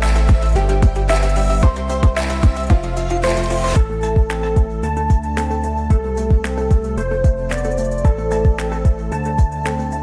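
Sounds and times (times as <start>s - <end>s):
kick drum beat: 0.0s - 3.0s, 3.8s - 5.3s, 5.9s - 7.4s
electronic music: 0.0s - 10.0s.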